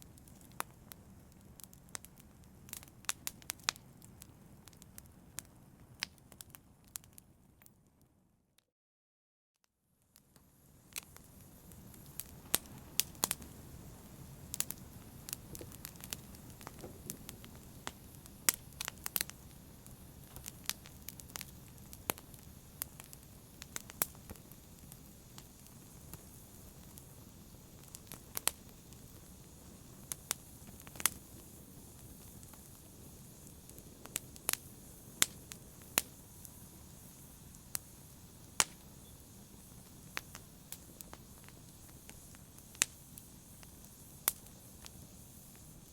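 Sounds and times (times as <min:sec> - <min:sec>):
wood fire crackling and popping: 0:00.0 - 0:07.7, 0:10.1 - 0:45.9
low rush of burning: 0:10.4 - 0:45.9.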